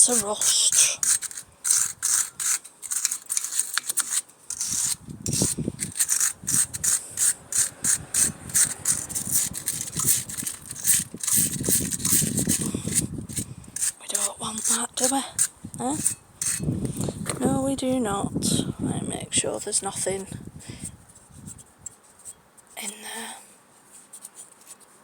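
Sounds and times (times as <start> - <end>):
scrubbing rust off metal: 0.0 - 17.8.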